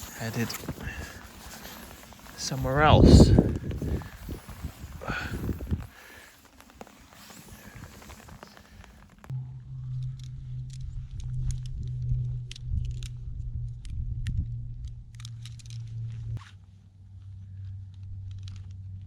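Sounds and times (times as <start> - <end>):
crunching and rustling: 0.0 - 9.3
low hum: 0.0 - 19.0.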